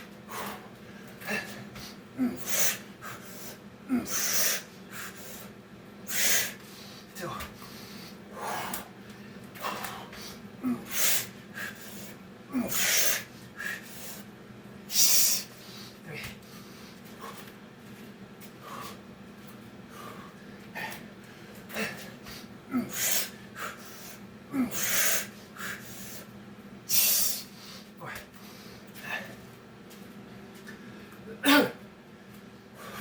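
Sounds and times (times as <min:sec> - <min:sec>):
man breathing hard: 0:00.3 - 0:14.3, 0:14.9 - 0:17.5, 0:18.6 - 0:19.1, 0:19.8 - 0:26.3, 0:26.9 - 0:29.4, 0:32.7 - 0:33.0.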